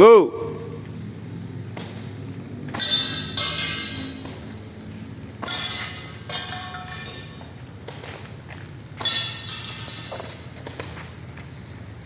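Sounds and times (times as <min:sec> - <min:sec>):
metallic ringing of steel targets: 0:02.7 - 0:04.6, 0:05.3 - 0:07.8, 0:09.0 - 0:10.7.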